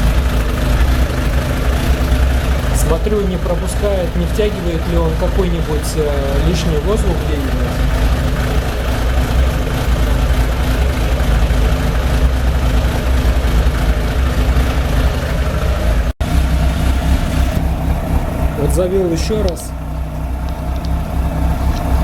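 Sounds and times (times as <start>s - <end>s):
motorcycle engine idling: 0.0s - 22.0s.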